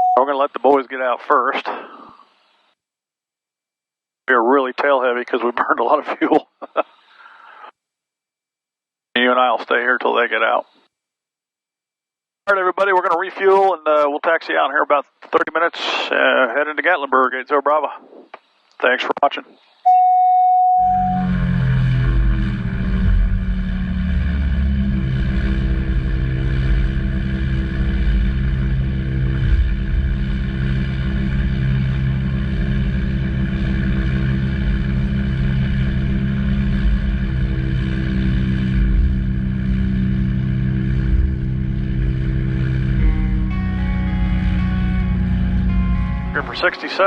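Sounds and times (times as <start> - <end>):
propeller plane engine droning: 20.8 - 47.0.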